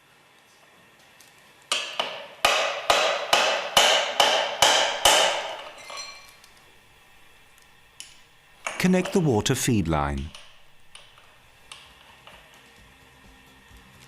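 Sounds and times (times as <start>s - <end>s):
tool knocking on metal: 1.8s - 5.8s, 8.6s - 9.4s.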